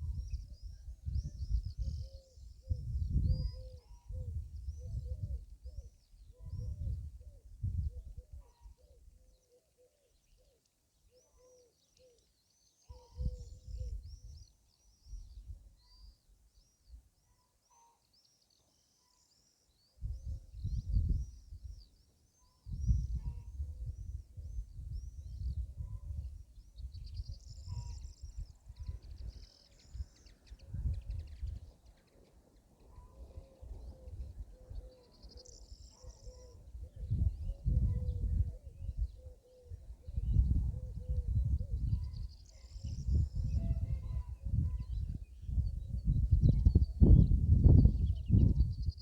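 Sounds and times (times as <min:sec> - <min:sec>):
wind rumbling on microphone: 0:00.0 - 0:09.2, 0:13.0 - 0:14.5, 0:20.0 - 0:21.9, 0:22.7 - 0:49.0
small birds chirping: 0:07.7 - 0:49.0
birds chirping: 0:26.1 - 0:45.6.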